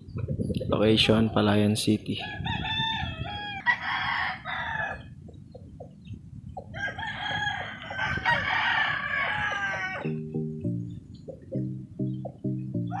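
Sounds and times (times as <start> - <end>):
rooster clucking: 2.1 - 10.2, 12.2 - 13.0
rooster crowing: 2.2 - 5.1, 6.7 - 10.2.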